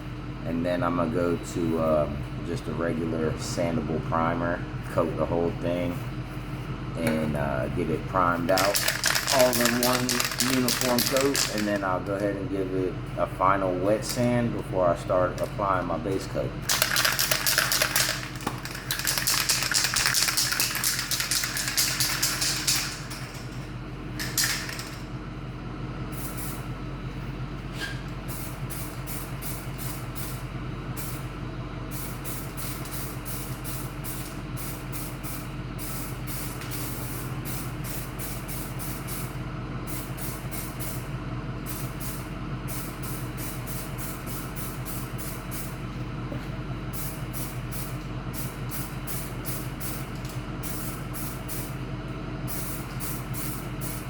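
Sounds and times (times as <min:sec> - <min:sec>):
steady low hum: 0:00.0 - 0:54.0
aerosol can spraying bursts: 0:47.0 - 0:51.7, 0:52.5 - 0:54.0.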